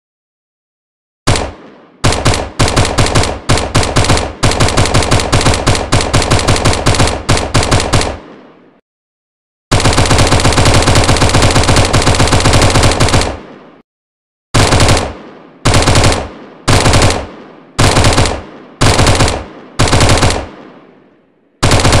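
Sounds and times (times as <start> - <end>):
automatic gunfire bursts: 1.3 - 8.2, 9.7 - 13.5, 14.6 - 20.8, 21.6 - 22.0.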